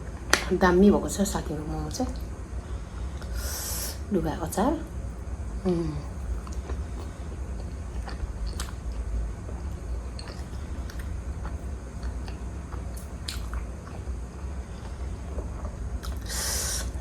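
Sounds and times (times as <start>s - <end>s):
steady low hum: 0.0s - 17.0s
wet chewing and biting: 6.1s - 17.0s
mouth clicks and smacks: 6.4s - 9.0s, 10.2s - 14.0s, 16.0s - 17.0s.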